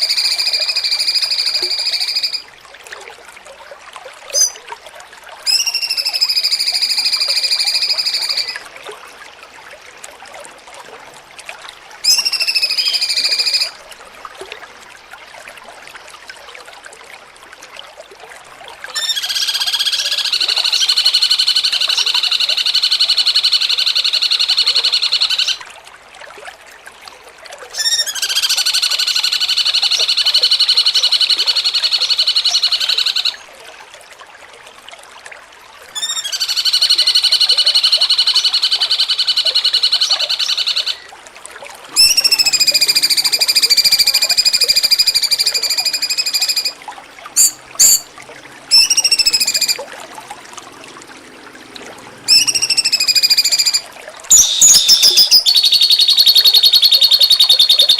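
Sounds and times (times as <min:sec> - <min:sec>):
bird whistled call: 0:00.0 - 0:02.4, 0:04.3 - 0:04.6, 0:05.5 - 0:08.6, 0:12.0 - 0:13.7, 0:19.0 - 0:25.6, 0:27.8 - 0:33.3, 0:36.0 - 0:41.0, 0:42.0 - 0:46.8, 0:47.4 - 0:48.1, 0:48.7 - 0:49.8, 0:52.3 - 0:57.9
short bird chirps: 0:47.4 - 0:48.1, 0:54.3 - 0:57.9.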